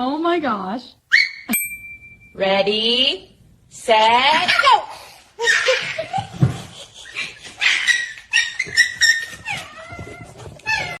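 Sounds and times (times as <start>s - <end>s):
dog whining and yipping: 1.1s - 1.5s, 5.4s - 6.0s, 7.6s - 11.0s.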